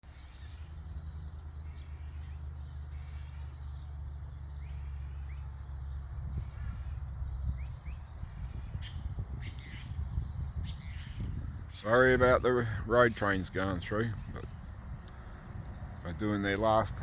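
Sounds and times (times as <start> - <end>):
faint bird chirps: 0.0 - 12.1
diesel truck engine passing: 0.5 - 9.0.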